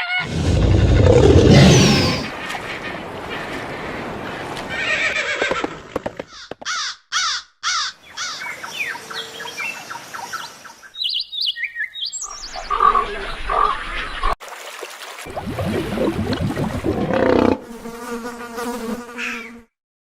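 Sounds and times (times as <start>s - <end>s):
harsh crow-like calls: 6.3s - 8.5s.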